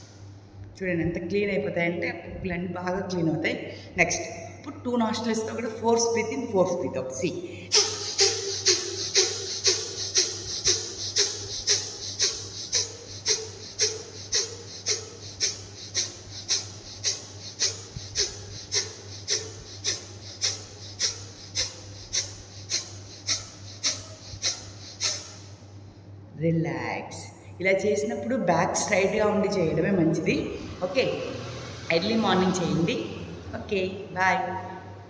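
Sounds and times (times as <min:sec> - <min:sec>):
low electrical hum: 0:00.0 - 0:35.0
woman breathing rapidly through nose: 0:07.5 - 0:25.6.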